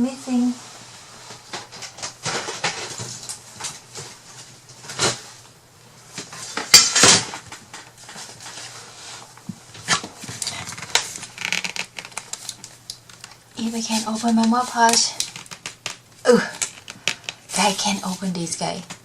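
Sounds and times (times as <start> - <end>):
clatter of supplies: 1.5 - 5.4.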